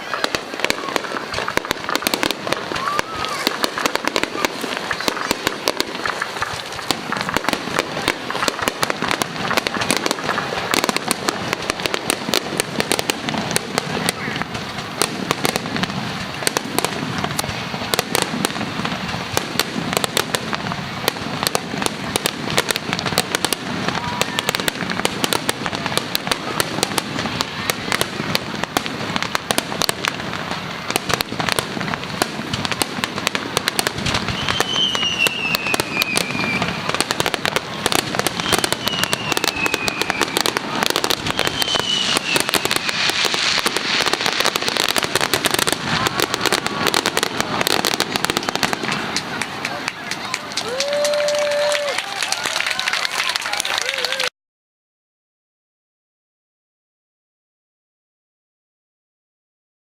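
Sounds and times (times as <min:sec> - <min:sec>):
falling firework whistles: 0:00.0 - 0:13.0, 0:32.2 - 0:49.2
fireworks bangs and crackles: 0:00.0 - 0:54.3.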